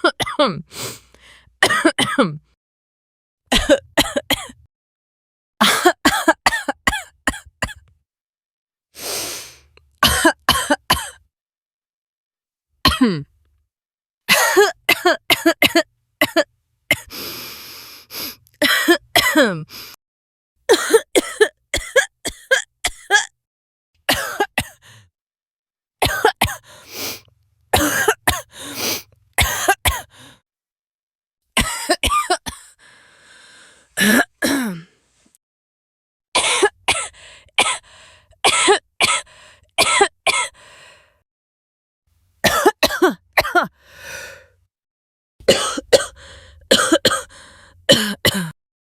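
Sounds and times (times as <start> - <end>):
person coughing: 0.0 - 0.6, 1.6 - 2.4, 3.5 - 4.6, 5.6 - 7.8, 10.0 - 11.2, 12.9 - 13.3, 14.3 - 17.1, 18.6 - 19.8, 20.7 - 23.3, 24.1 - 24.8, 26.0 - 26.7, 27.8 - 30.1, 31.6 - 32.7, 34.0 - 35.0, 36.4 - 37.8, 42.4 - 43.8, 45.4 - 47.3, 47.9 - 48.6.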